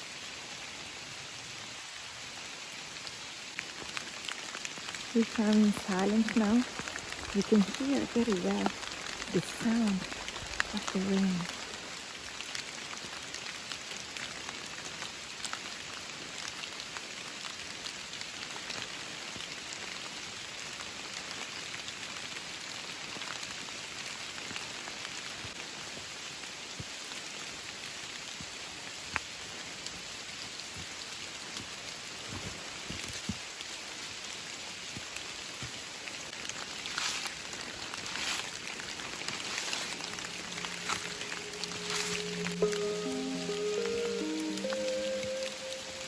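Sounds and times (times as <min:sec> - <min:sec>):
steady rain falling: 0:00.0 - 0:46.0.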